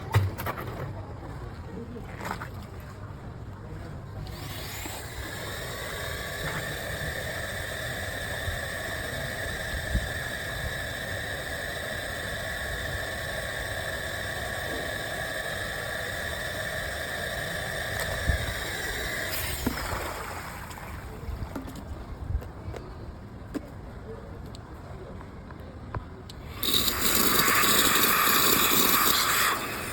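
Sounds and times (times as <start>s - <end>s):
handheld vacuum cleaner whining: 4.2s - 21.0s, 26.4s - 29.9s.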